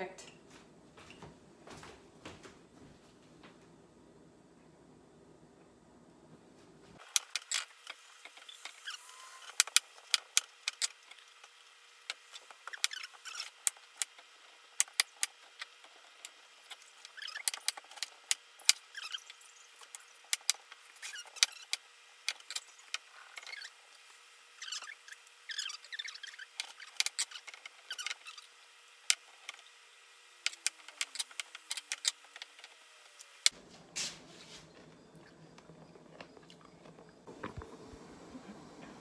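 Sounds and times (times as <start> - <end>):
brine boiling in a pot: 7.0 - 39.0.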